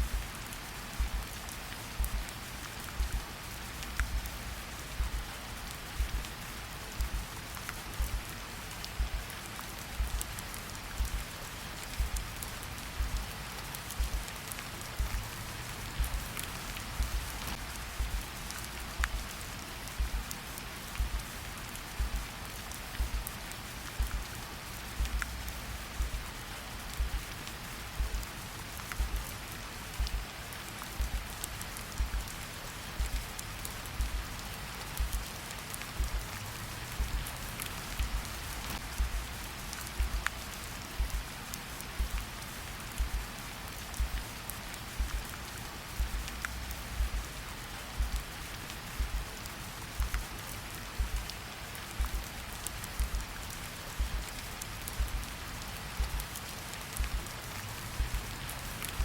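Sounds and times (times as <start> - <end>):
heartbeat thumps: 0.0 - 0.3, 1.0 - 1.3, 2.0 - 2.3, 2.9 - 5.3, 6.0 - 6.3, 6.9 - 7.3, 8.0 - 8.3, 9.0 - 9.3, 9.9 - 10.3, 10.9 - 11.3, 11.9 - 12.3, 13.0 - 13.3, 14.0 - 14.3, 15.0 - 19.3, 19.9 - 20.3, 21.0 - 21.4, 22.0 - 22.3, 23.0 - 23.4, 24.0 - 24.3, 25.0 - 26.3, 26.9 - 27.3, 27.9 - 28.3, 29.0 - 29.3, 30.0 - 30.3, 31.0 - 31.3, 32.0 - 32.3, 33.0 - 33.3, 34.0 - 34.3, 35.0 - 35.3, 36.0 - 36.3, 37.0 - 41.3, 42.0 - 42.3, 43.0 - 43.3, 44.0 - 44.4, 45.0 - 45.3, 46.0 - 48.4, 49.0 - 49.4, 50.0 - 50.3, 51.0 - 51.3, 52.0 - 53.3, 54.0 - 55.3, 56.0 - 56.4, 57.0 - 57.4, 58.0 - 58.4
rain hiss: 0.0 - 59.0.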